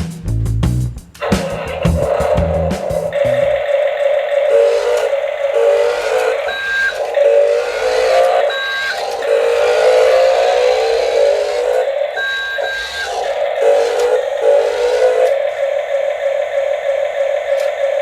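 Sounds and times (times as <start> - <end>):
buzzy synthetic engine sound: 1.2 - 18.0
short high beeps: 12.2 - 13.2.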